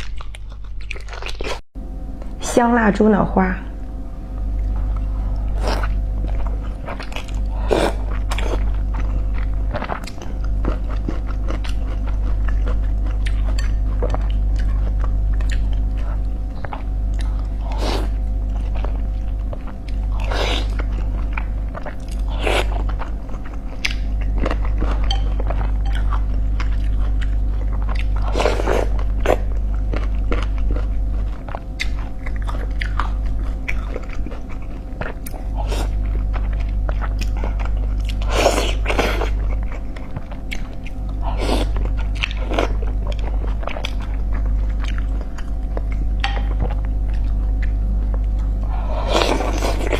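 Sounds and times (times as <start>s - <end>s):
person chewing: 0.0s - 1.6s, 4.6s - 49.9s
low hum: 24.0s - 27.5s, 46.0s - 48.8s.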